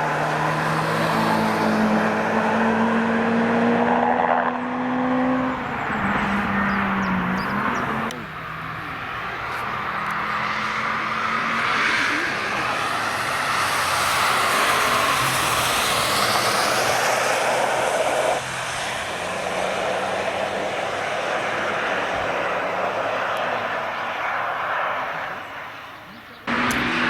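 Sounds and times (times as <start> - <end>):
car engine passing: 0.0 - 27.0
tyres hissing on wet tarmac: 11.5 - 23.5.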